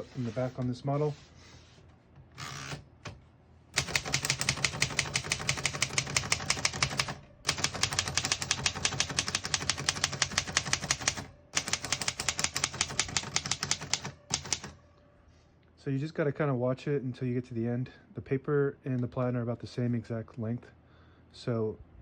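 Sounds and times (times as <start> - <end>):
typewriter keystrokes: 3.8 - 14.8.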